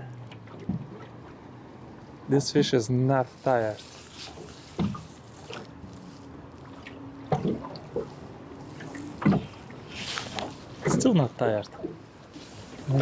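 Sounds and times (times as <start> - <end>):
faint steady hum: 0.0 - 13.0
water lapping against boat hull: 0.1 - 13.0.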